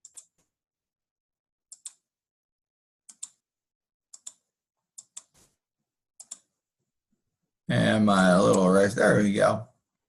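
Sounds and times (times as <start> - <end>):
computer mouse button clicking: 3.1 - 3.4.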